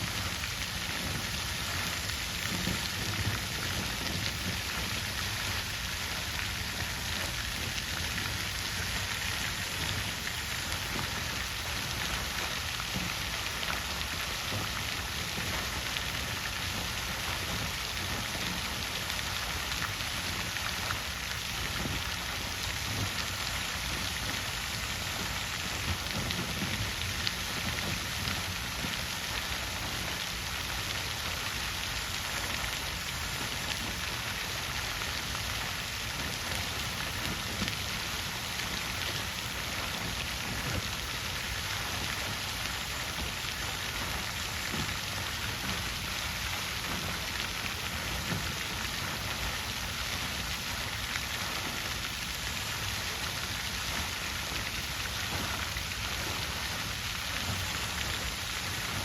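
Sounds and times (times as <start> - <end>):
water fountain splashing: 0.0 - 59.0.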